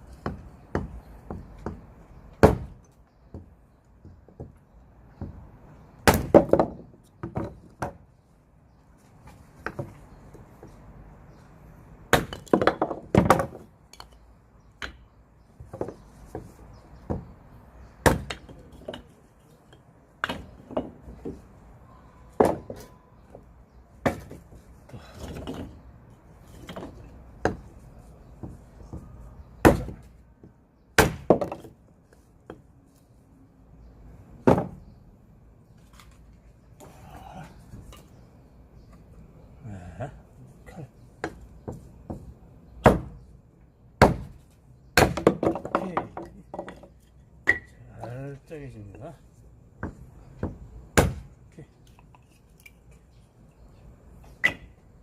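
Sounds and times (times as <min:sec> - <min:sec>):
firewood being chopped: 0:00.2 - 0:03.5, 0:06.0 - 0:08.0, 0:12.1 - 0:14.2, 0:18.0 - 0:19.2, 0:20.2 - 0:21.4, 0:24.0 - 0:25.8, 0:28.4 - 0:31.8, 0:34.4 - 0:34.8, 0:42.8 - 0:43.2, 0:44.0 - 0:47.7, 0:49.8 - 0:51.4, 0:54.4 - 0:54.8.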